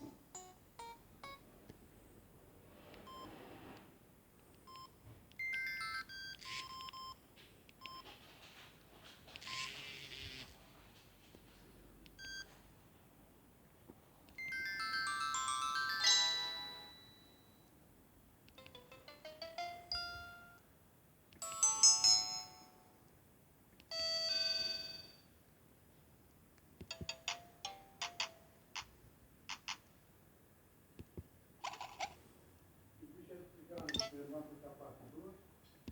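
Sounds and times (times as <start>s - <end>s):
keypad beeps: 3.1s - 3.3s, 4.7s - 7.2s, 7.8s - 8.1s, 9.4s - 9.8s, 12.2s - 12.6s, 26.8s - 28.9s, 33.8s - 34.2s
mobile phone ringtone jingles: 5.4s - 7.1s, 14.4s - 17.6s, 18.6s - 20.6s, 21.4s - 22.9s, 23.9s - 25.3s, 26.9s - 28.9s.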